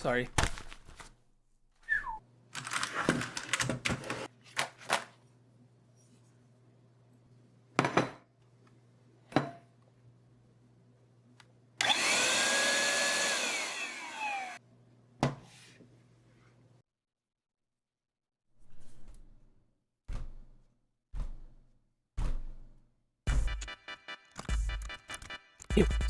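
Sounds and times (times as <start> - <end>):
electric fan motor whining: 11.8 - 14.6.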